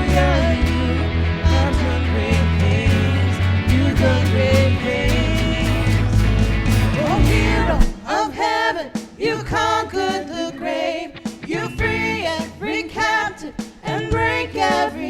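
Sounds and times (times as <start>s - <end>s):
drums and bass: 0.0s - 8.2s, 11.2s - 15.0s
worship band playing: 0.0s - 9.2s
people singing: 0.0s - 15.0s.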